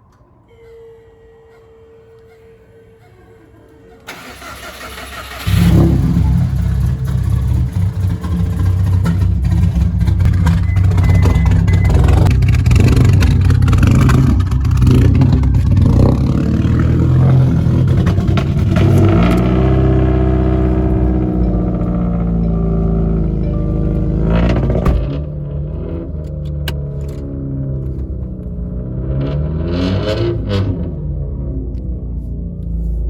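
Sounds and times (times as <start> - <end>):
car engine running: 4.1 - 33.0
music: 20.2 - 25.3.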